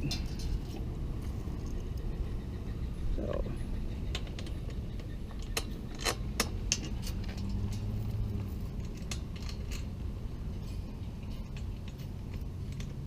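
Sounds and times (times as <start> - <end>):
metal bolts clicking: 4.1 - 7.9, 8.7 - 13.0.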